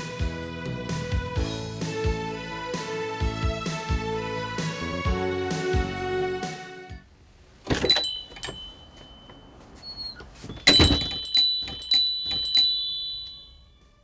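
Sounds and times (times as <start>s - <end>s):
metal pipe door chime ringing: 7.7s - 14.0s
door thump: 10.5s - 12.6s.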